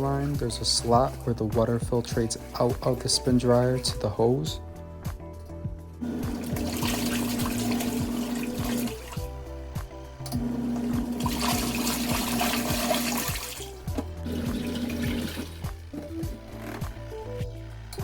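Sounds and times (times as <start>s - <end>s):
background music with beat: 0.0s - 18.0s
washing machine churning water: 6.0s - 9.5s, 10.3s - 17.2s
motor hum: 6.0s - 18.0s.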